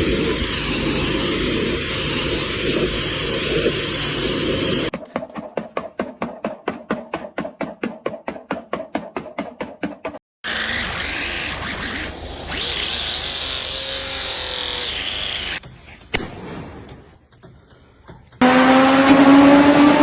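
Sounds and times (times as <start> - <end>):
rapid scrubbing strokes: 1.9 - 10.2.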